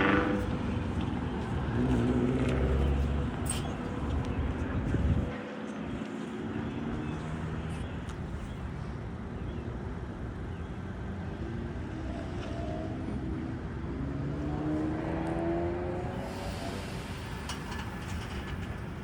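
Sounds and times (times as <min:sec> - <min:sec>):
diesel locomotive engine running: 0:15.9 - 0:19.0.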